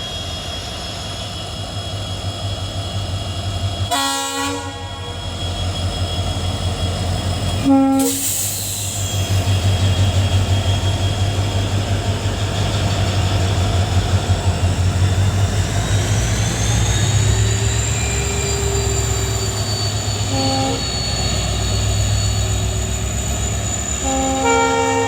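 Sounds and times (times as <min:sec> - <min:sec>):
diesel locomotive engines humming: 0:00.0 - 0:25.0
horn-like tone: 0:03.9 - 0:05.2, 0:07.6 - 0:08.2, 0:20.2 - 0:20.9, 0:24.0 - 0:25.0.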